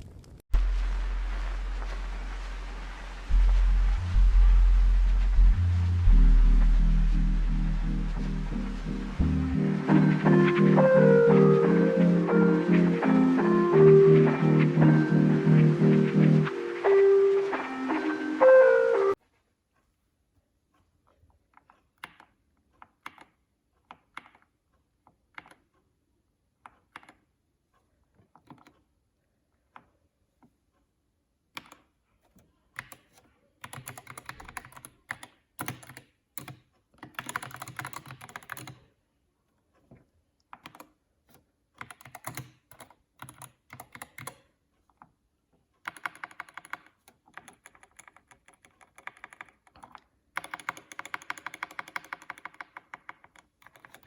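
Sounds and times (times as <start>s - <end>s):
mechanical keyboard typing: 32.8s - 38.9s, 40.6s - 41.0s, 41.8s - 44.5s, 45.8s - 54.0s.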